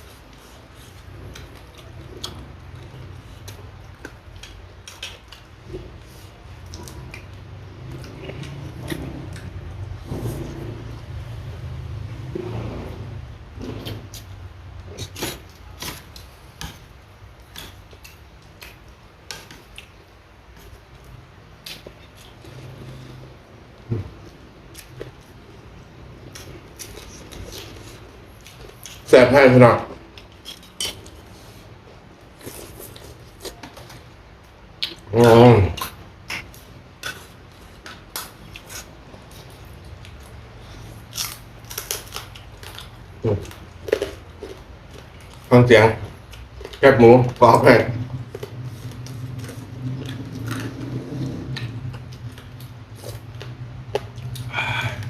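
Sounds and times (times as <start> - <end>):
chewing crisp food: 0.1 - 11.2, 23.9 - 29.1, 29.9 - 55.0.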